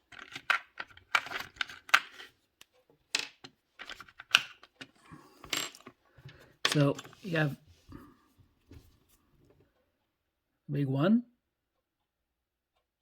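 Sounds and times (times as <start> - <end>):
rotary tool accessories clicking: 0.0 - 2.3.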